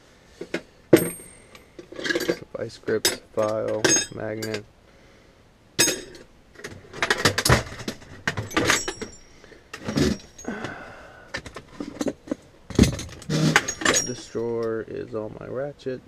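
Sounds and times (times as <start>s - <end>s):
metal hand tools clinking: 1.0s - 4.6s, 7.0s - 10.8s, 12.8s - 14.8s
steel tool chest drawers sliding: 11.7s - 14.3s.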